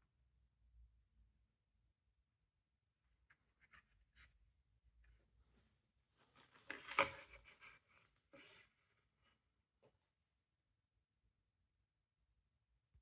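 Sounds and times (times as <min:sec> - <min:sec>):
plastic scraping and clattering: 0:06.3 - 0:08.7.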